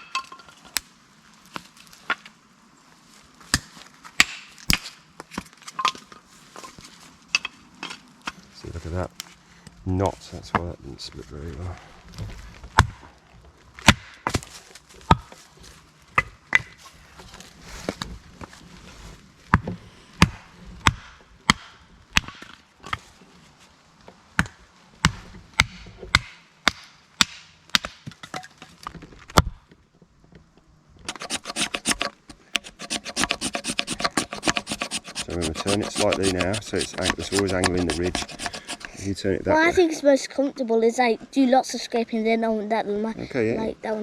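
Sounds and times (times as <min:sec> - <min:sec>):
wood being chopped: 0:03.5 - 0:05.0, 0:13.8 - 0:14.5, 0:20.2 - 0:22.6, 0:24.4 - 0:28.0
knife shaving wood: 0:31.1 - 0:39.1.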